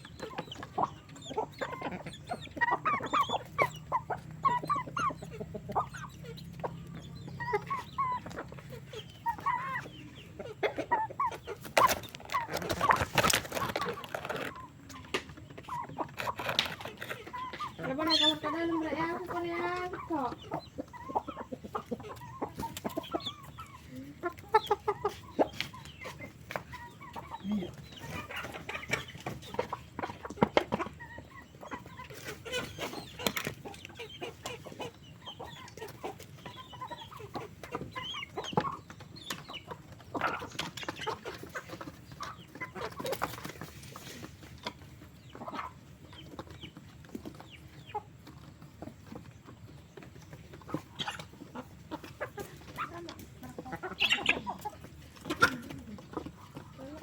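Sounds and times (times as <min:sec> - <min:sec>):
chickens clucking: 0:00.0 - 0:57.0.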